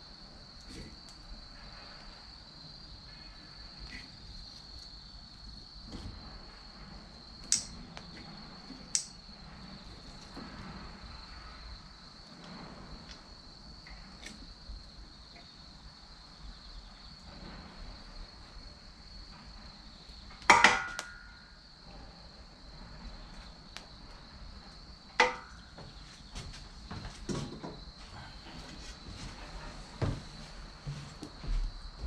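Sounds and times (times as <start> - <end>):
high insect trill: 0.0 - 32.0
wood fire cracking: 2.8 - 15.8.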